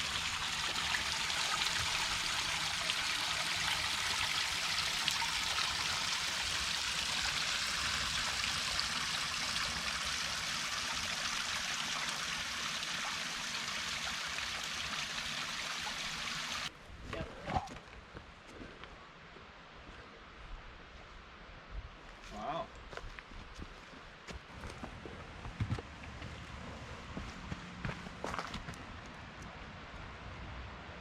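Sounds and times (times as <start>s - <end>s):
creek water flowing: 0.0s - 16.7s.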